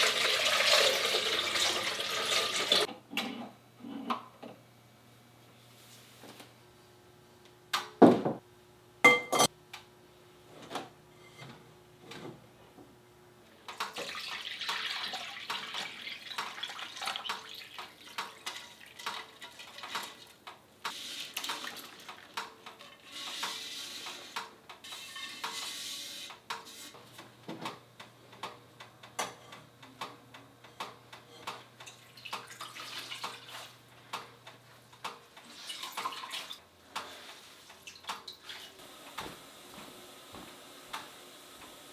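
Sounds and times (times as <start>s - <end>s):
clinks against a pot: 9.1s - 9.5s
water sloshing and dripping: 13.8s - 20.4s, 31.9s - 33.8s, 35.5s - 36.6s.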